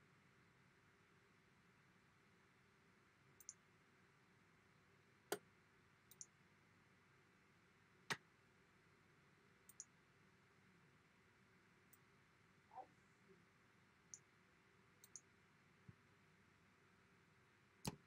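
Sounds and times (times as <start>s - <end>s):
faint high double ticks: 3.4s - 3.6s.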